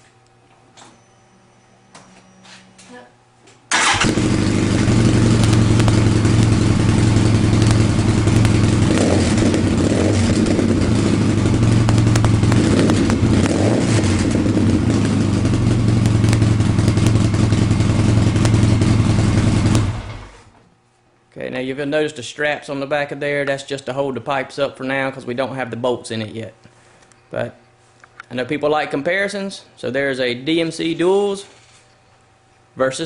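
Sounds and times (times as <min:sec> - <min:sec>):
engine running loud: 0:03.8 - 0:20.5.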